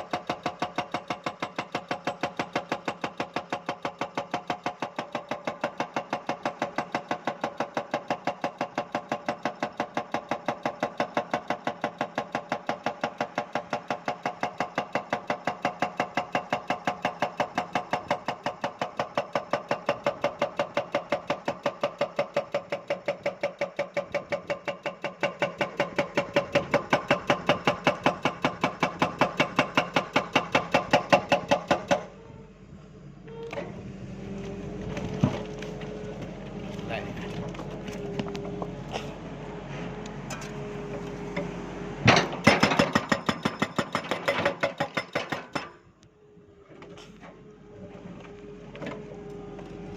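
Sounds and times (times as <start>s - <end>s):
hydraulic breaker hammering rock: 0.0s - 32.1s, 42.0s - 45.8s
excavator engine running: 25.4s - 44.6s, 46.1s - 49.9s.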